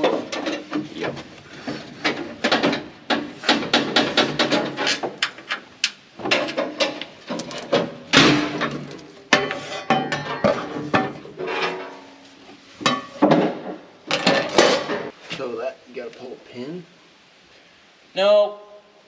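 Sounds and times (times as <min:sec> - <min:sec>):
metal tools clanking and rattling: 0:00.0 - 0:01.2, 0:02.0 - 0:12.2, 0:12.8 - 0:15.1.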